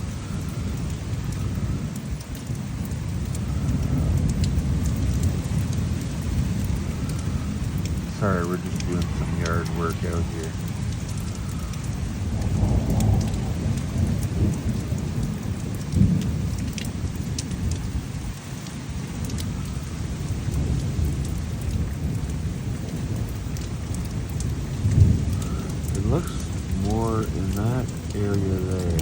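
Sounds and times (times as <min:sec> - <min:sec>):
steady hiss: 0:00.0 - 0:29.0
thunder rumbling: 0:00.0 - 0:29.0
sharp ticks: 0:03.2 - 0:17.9, 0:20.5 - 0:29.0.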